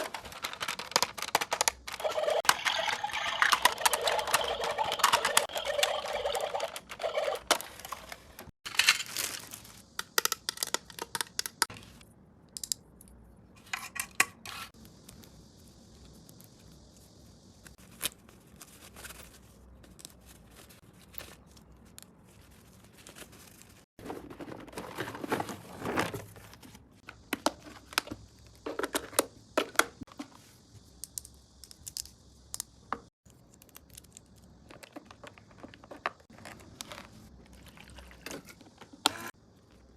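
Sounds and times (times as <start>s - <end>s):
packaging crinkling and rustling: 7.2s - 10.0s, 17.8s - 26.9s.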